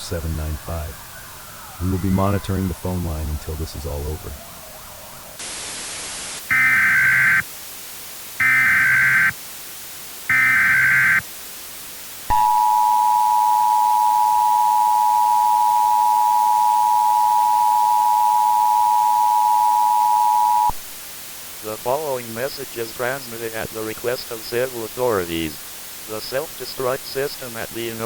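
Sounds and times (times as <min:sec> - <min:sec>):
static hiss: 0:00.0 - 0:14.6, 0:15.4 - 0:28.0
screeching digital warble: 0:06.5 - 0:07.4, 0:08.4 - 0:09.3, 0:10.3 - 0:11.2
two-tone alert signal: 0:12.3 - 0:20.7.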